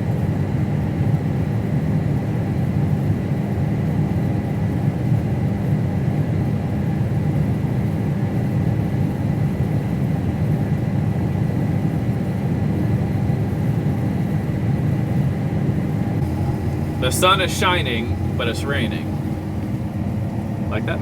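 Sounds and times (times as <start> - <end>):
combine harvester droning: 16.0 - 21.0
faint high whine: 16.2 - 21.0.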